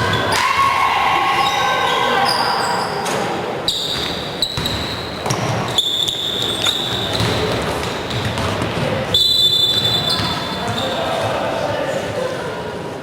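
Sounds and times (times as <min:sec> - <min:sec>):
basketball bouncing: 0:03.9 - 0:11.0.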